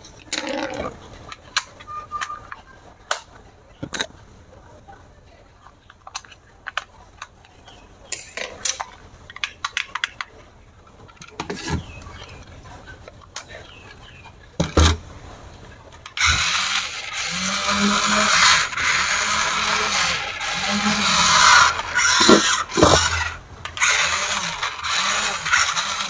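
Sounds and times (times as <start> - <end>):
plastic toy parts clicking: 6.0 - 10.4, 16.0 - 26.0.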